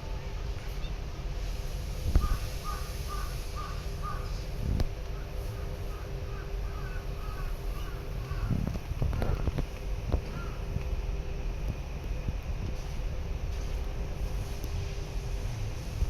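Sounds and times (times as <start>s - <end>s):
steady low hum: 0.0s - 16.0s
crow-like bird calling: 2.2s - 4.4s, 5.9s - 9.5s, 10.3s - 10.6s.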